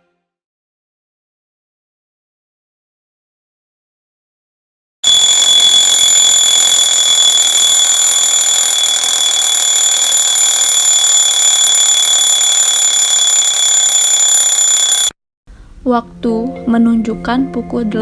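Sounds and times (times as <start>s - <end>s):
alarm clock ringing: 5.0s - 15.2s.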